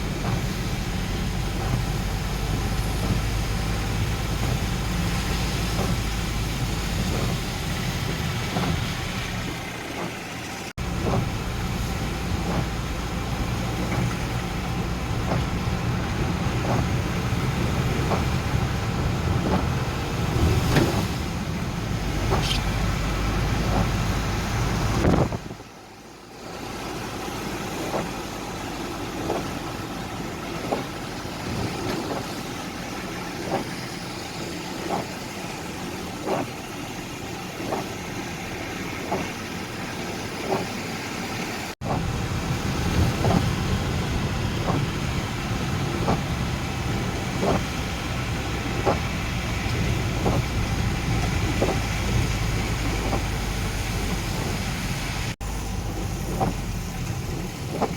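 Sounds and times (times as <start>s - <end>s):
vehicle engine running: 0.0s - 26.1s, 41.7s - 57.9s
rain: 0.0s - 57.9s
windscreen wipers stroking: 0.0s - 57.9s.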